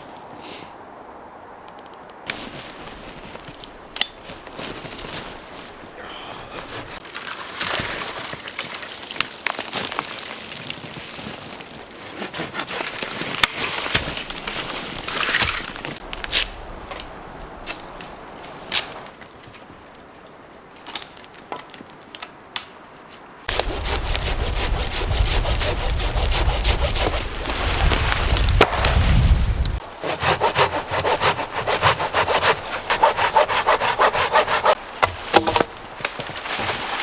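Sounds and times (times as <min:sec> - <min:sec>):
crunching of snow and twigs: 0:02.2 - 0:22.1, 0:23.5 - 0:30.0, 0:34.6 - 0:37.0
sticks snapping: 0:03.6 - 0:04.3, 0:20.7 - 0:23.8, 0:34.7 - 0:37.0.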